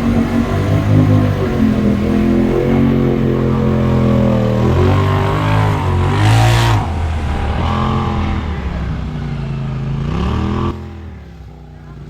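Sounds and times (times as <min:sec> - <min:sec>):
utility vehicle engine revving: 0:00.0 - 0:12.0
short rush of noise: 0:05.0 - 0:10.8.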